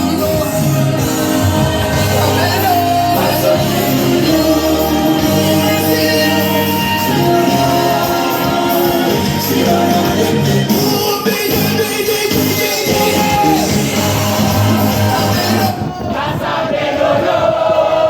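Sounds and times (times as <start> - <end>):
loud party music with singing: 0.0 - 18.0
people shouting: 12.9 - 18.0.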